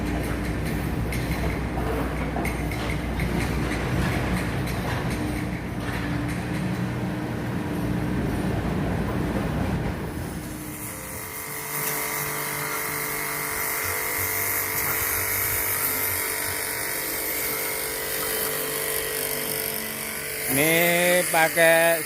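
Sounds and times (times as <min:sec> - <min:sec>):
small motor running: 0:10.2 - 0:22.0.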